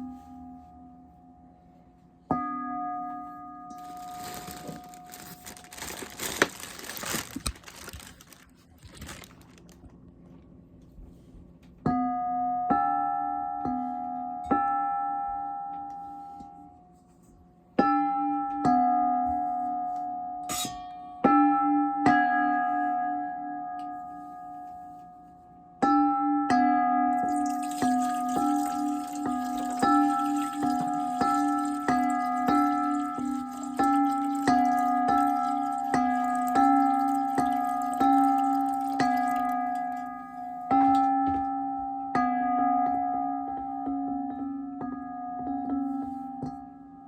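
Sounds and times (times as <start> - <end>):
water splashing into metal bowl: 27.2 - 40.2.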